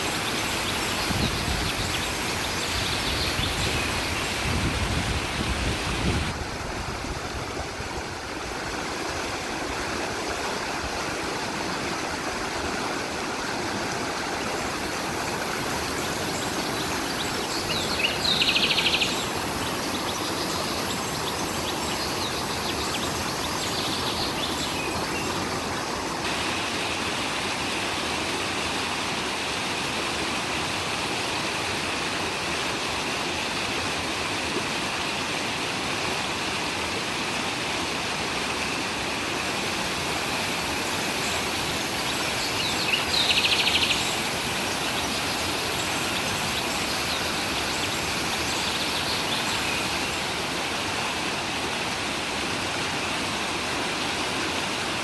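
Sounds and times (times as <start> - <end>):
stream water rushing: 0.0 - 55.0
birds calling: 14.4 - 25.9, 39.4 - 50.4.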